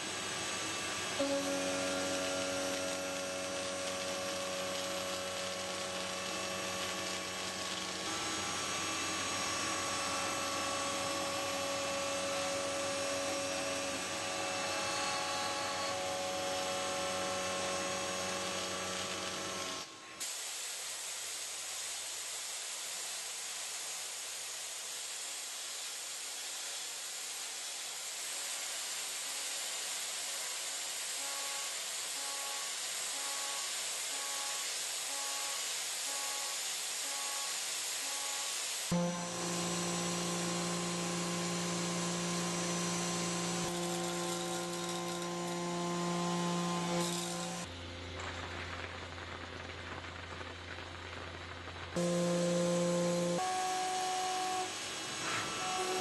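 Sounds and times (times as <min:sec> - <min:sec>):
machine whine: 0:00.0 - 0:20.2, 0:28.5 - 0:56.0
steady hiss: 0:20.2 - 0:44.9.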